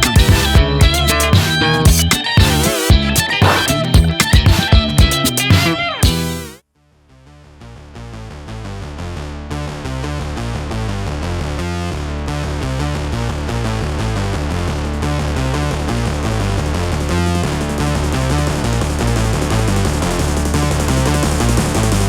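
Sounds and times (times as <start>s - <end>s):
electronic music with steady beat: 0.0s - 6.6s.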